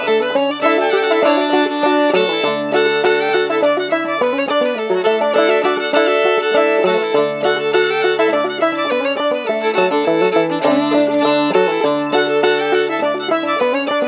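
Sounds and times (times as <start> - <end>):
fiddle playing lively tune: 0.0 - 14.0
plucked banjo: 0.0 - 14.0.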